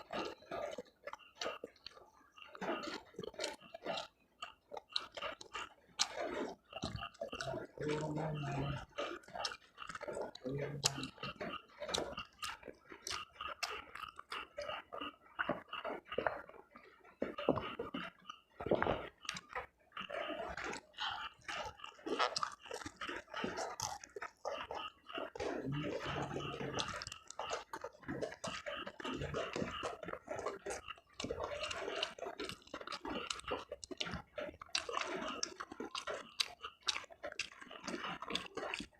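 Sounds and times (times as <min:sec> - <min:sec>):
person chewing food: 0:00.0 - 0:38.9.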